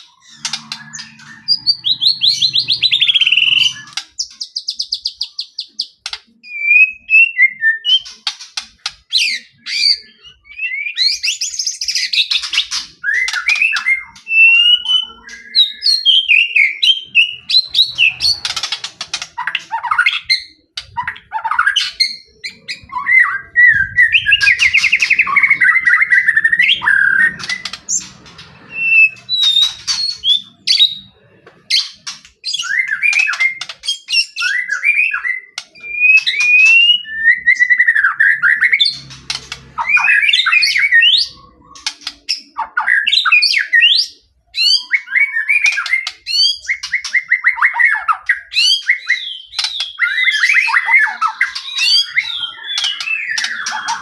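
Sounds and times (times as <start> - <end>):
songbird whistles and trills: 0.0 - 8.4, 9.1 - 39.1, 39.8 - 54.0.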